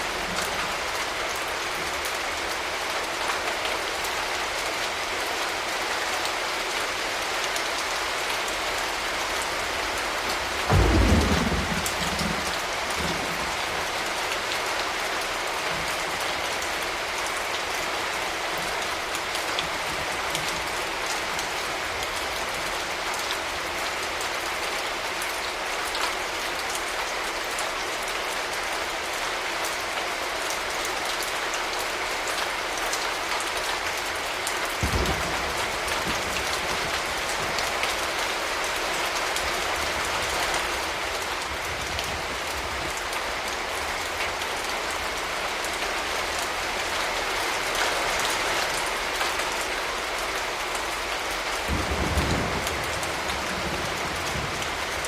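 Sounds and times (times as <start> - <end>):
steady rain falling: 0.0 - 55.0
thunder rumbling: 10.6 - 14.0.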